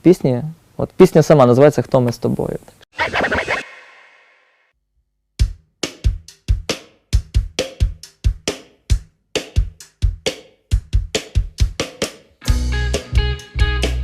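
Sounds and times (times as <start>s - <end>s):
drum kit playing: 5.4s - 14.0s.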